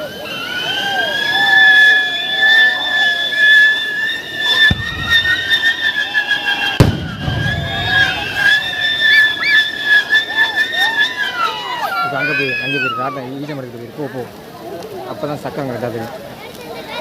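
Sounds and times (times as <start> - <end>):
fireworks whistling: 0.0 - 13.0
loud firework bangs: 4.6 - 5.7, 6.8 - 9.2.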